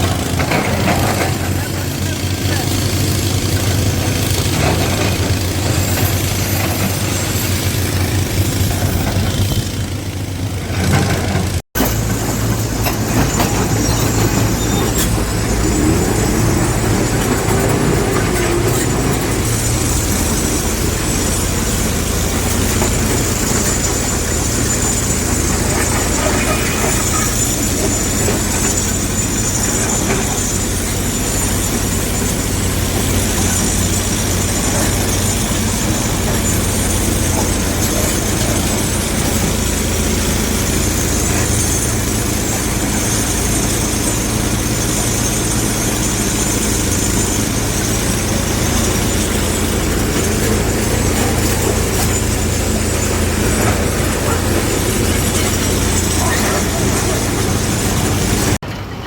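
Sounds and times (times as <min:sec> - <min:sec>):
heavy diesel engines rumbling: 0:00.0 - 0:59.0.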